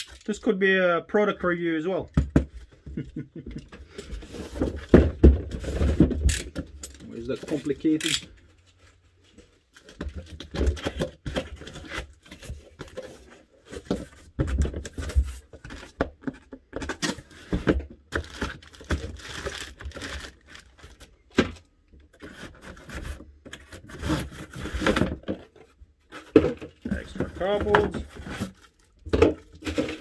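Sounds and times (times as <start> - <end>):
cardboard scraping and tearing: 22.2 - 25.4, 26.1 - 28.8.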